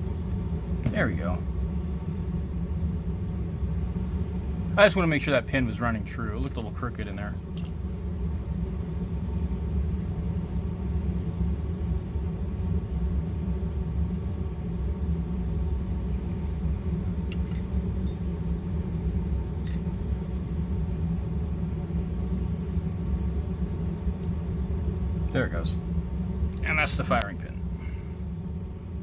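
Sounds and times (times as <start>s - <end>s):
low mechanical hum: 0.0s - 29.0s
light clicks of metal parts: 7.6s - 7.9s, 17.2s - 18.3s.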